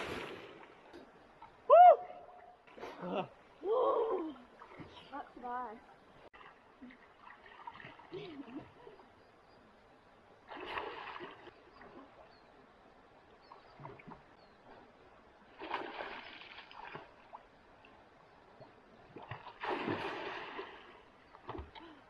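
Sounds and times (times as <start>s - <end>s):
water splashes: 0.0s - 3.2s, 6.2s - 9.0s, 10.4s - 12.4s, 13.4s - 22.0s.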